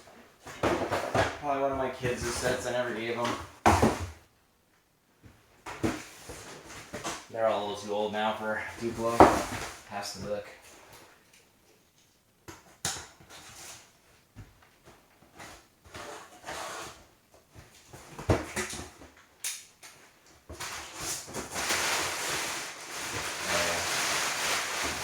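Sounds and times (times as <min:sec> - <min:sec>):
boxes knocking and tapping: 0:00.4 - 0:04.2, 0:08.8 - 0:09.8.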